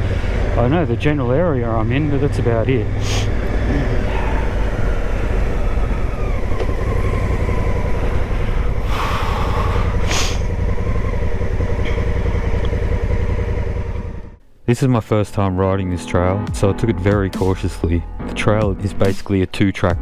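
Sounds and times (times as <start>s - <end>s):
motorcycle engine running: 0.0s - 14.4s.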